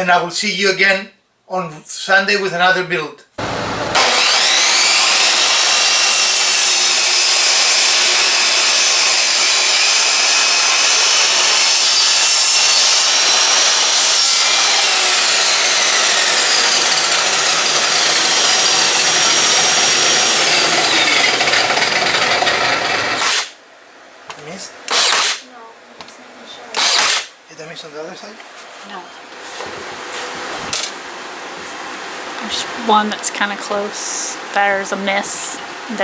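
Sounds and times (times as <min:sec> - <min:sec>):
power saw cutting wood: 0:03.4 - 0:23.6, 0:24.9 - 0:25.4, 0:26.7 - 0:27.3.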